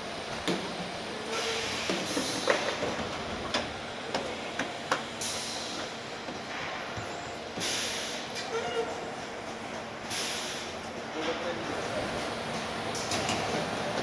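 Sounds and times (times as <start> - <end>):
air hiss: 7.6 - 8.3, 10.1 - 10.8.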